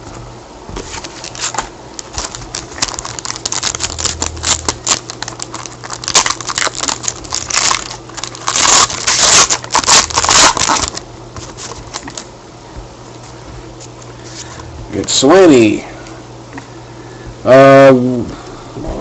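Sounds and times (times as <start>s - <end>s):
wrapper crinkling and tearing: 1.0s - 12.3s.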